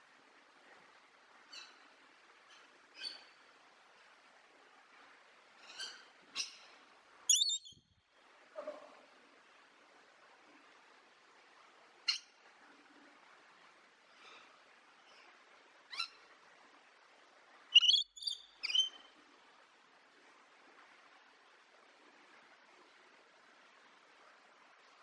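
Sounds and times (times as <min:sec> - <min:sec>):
faint hiss: 0:00.0 - 0:25.0
parrot calling: 0:17.8 - 0:19.0.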